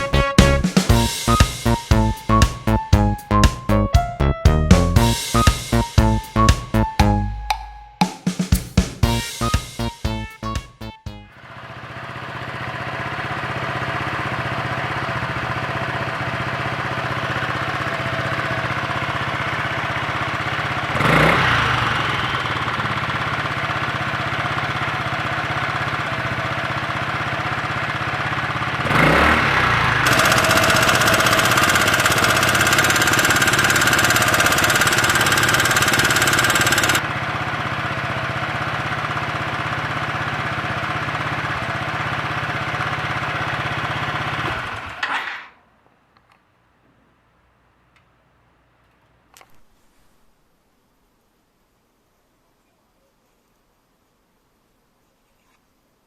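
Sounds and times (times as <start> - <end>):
scooter engine idling and revving: 11.3 - 45.5.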